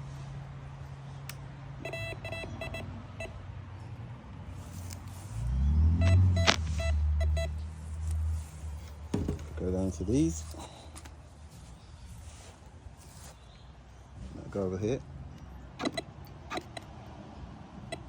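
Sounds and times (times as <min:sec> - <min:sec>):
metal detector short quick beeps: 0:01.8 - 0:02.8, 0:06.0 - 0:07.5.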